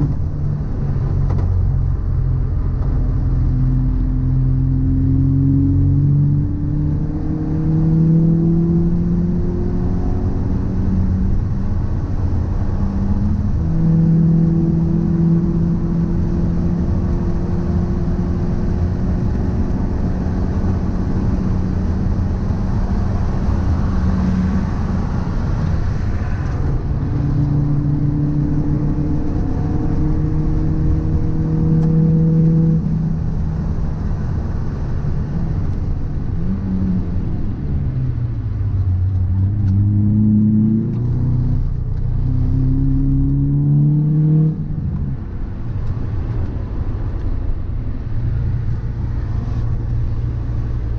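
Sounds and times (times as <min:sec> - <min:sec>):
heavy low rumble: 0:00.0 - 0:07.2, 0:16.7 - 0:43.8
car engine revving: 0:00.0 - 0:50.9.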